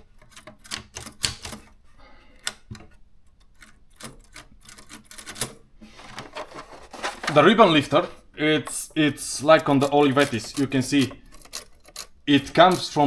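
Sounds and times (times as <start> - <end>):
typewriter mechanism clicking: 0.0 - 1.8, 3.4 - 5.6, 9.7 - 13.0.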